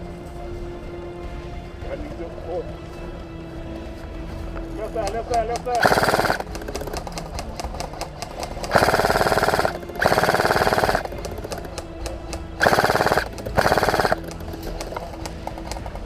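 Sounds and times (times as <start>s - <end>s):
airsoft gun firing full auto: 5.6s - 11.8s, 12.6s - 15.1s.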